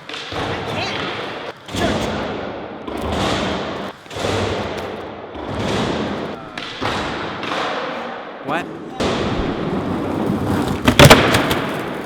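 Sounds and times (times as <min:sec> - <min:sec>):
skateboard wheels rolling: 0:09.2 - 0:12.0.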